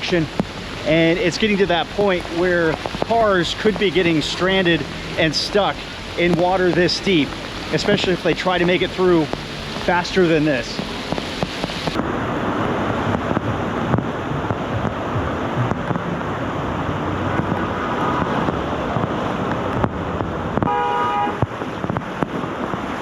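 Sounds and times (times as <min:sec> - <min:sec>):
floodwater rushing and sloshing: 0:00.0 - 0:23.0
wind buffeting microphone: 0:10.6 - 0:23.0.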